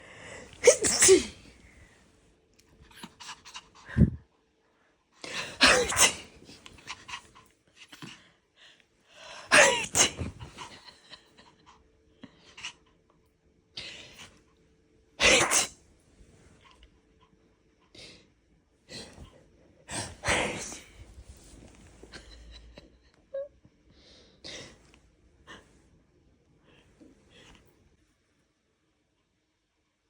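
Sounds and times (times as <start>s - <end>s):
person sneezing loudly: 0.5s - 1.6s, 5.3s - 6.4s, 9.4s - 10.7s, 15.2s - 15.8s, 19.9s - 21.0s.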